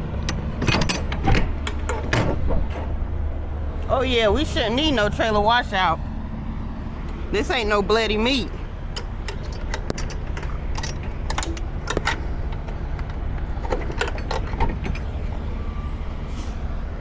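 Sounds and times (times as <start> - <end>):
metallic clicks and clanks: 0.0 - 2.9, 8.2 - 15.3
truck engine idling: 0.0 - 17.0.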